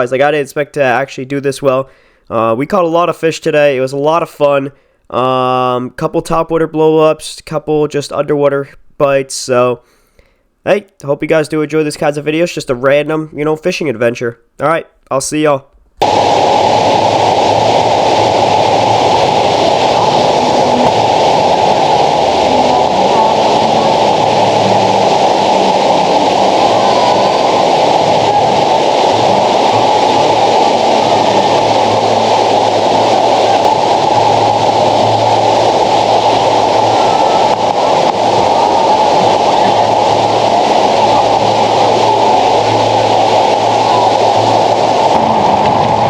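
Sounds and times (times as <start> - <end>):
river water rushing through a dam: 16.0 - 46.0.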